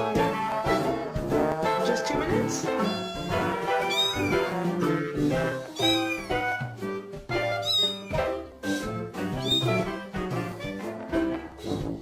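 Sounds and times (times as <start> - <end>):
background music: 0.0 - 12.0
cat meowing: 2.6 - 4.5, 5.7 - 6.6, 7.4 - 8.4, 9.4 - 10.0.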